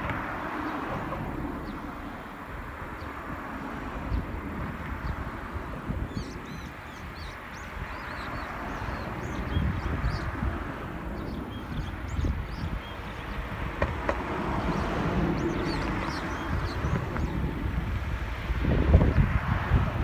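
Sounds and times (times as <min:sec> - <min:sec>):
wind buffeting microphone: 0:00.0 - 0:20.0
small birds chirping: 0:04.0 - 0:18.0.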